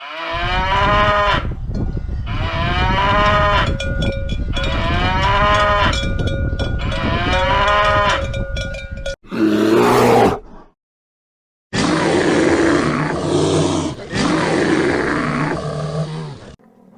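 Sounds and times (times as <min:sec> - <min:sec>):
cow mooing: 0:00.0 - 0:01.5, 0:02.3 - 0:03.8, 0:04.6 - 0:06.0, 0:06.8 - 0:08.2
cowbell clanking: 0:03.2 - 0:09.2.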